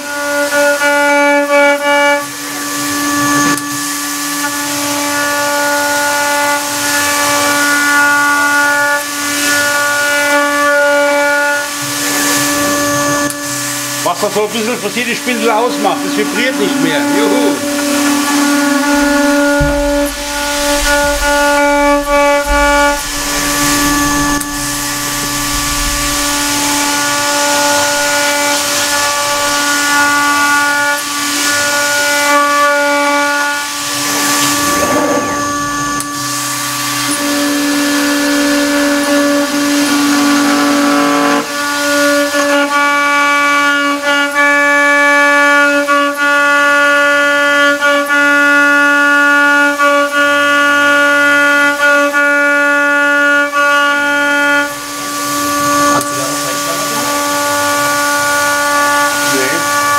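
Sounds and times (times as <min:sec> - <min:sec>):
milling spindle whine: 0:11.3 - 0:43.2
hiss of mist coolant blast: 0:17.7 - 0:30.4.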